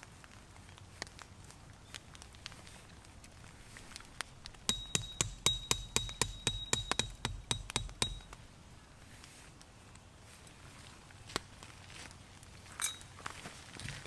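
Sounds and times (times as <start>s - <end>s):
hammer striking metal tent stake: 4.7s - 8.4s.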